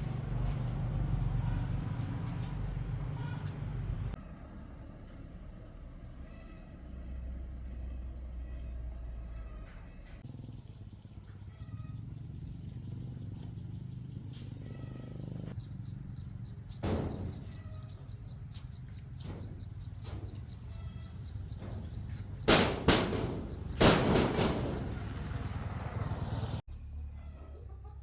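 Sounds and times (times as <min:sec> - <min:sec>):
loud sharp knocks: 0:16.8 - 0:17.7, 0:21.5 - 0:25.7
dull knock: 0:21.6 - 0:25.2.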